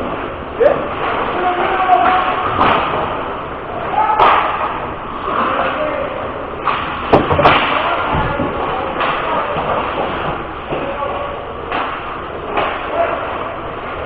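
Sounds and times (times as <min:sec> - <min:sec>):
players' voices: 0:00.5 - 0:13.8
slams against rink boards: 0:01.9 - 0:03.2, 0:04.0 - 0:04.8, 0:06.6 - 0:10.9, 0:11.7 - 0:13.0.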